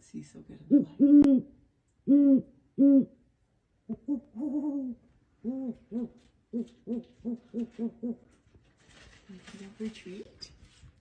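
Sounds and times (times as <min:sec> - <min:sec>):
owl hooting: 0:00.7 - 0:03.2, 0:03.9 - 0:08.4.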